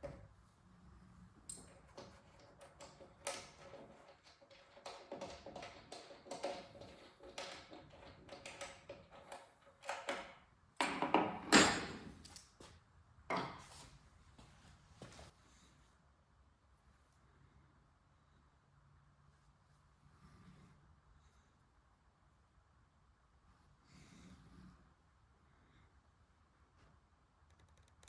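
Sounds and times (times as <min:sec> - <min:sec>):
tools clanking on metal parts: 0:01.5 - 0:12.4.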